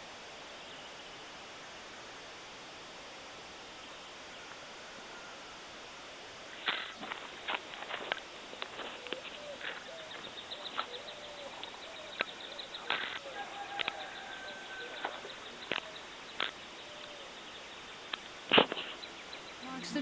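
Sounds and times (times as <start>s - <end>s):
birds cooing: 8.8s - 17.4s.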